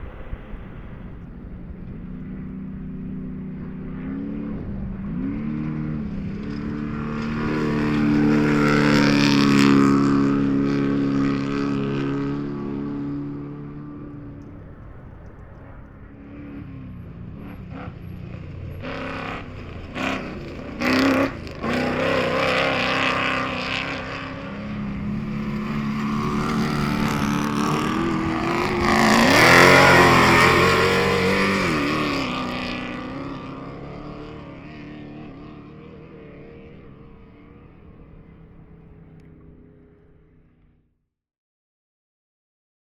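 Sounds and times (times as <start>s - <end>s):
loud bursts of noise: 0.0s - 4.0s
race vehicle engine revving: 0.0s - 40.4s.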